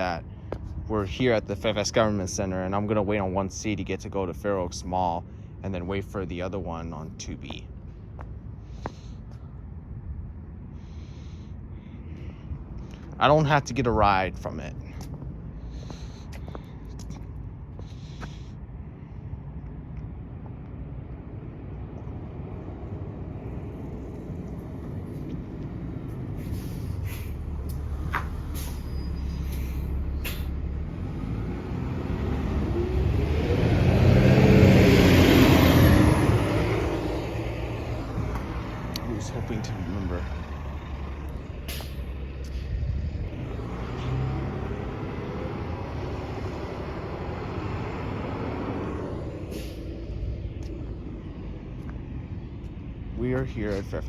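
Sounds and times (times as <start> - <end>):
bus engine rumbling: 0.0 - 54.0
air hiss: 28.5 - 30.6.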